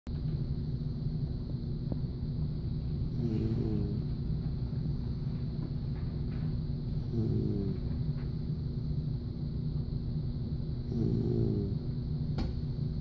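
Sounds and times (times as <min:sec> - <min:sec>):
low rumble: 0:00.1 - 0:13.0
puppy snoring: 0:02.9 - 0:04.7, 0:06.9 - 0:08.3, 0:10.7 - 0:12.2.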